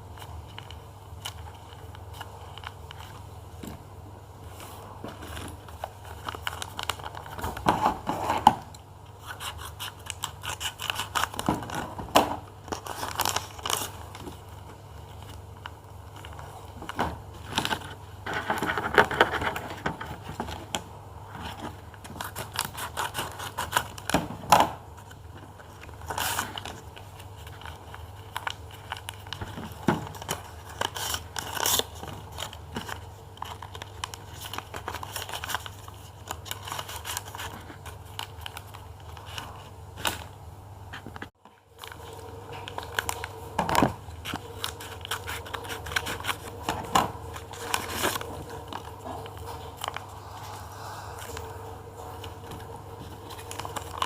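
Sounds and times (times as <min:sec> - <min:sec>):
steady low hum: 0:00.0 - 0:54.0
bag crinkling and tearing: 0:09.3 - 0:20.4, 0:41.7 - 0:54.0.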